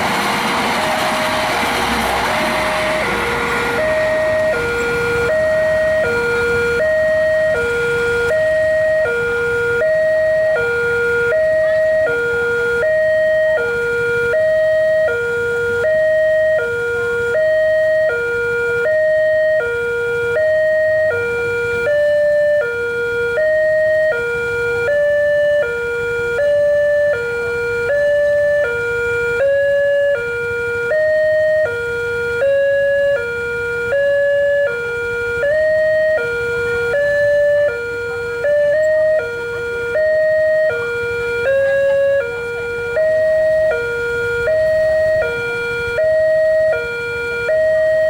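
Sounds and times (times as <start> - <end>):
level-crossing two-tone siren: 0.0 - 48.0.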